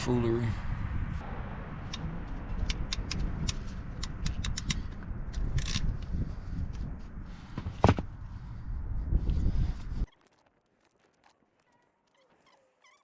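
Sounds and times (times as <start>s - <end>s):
wind rumbling on microphone: 0.0s - 10.1s
clicks and snips of hand tools: 2.6s - 5.9s.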